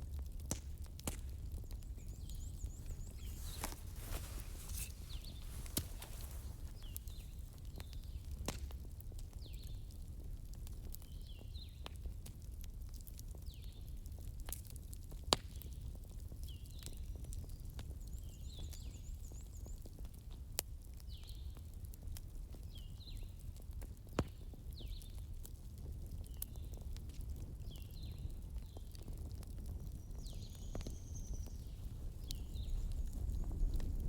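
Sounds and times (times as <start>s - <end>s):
fire pops: 0.0s - 11.1s, 26.3s - 34.0s
wood fire crackling: 0.0s - 18.1s, 19.6s - 34.0s.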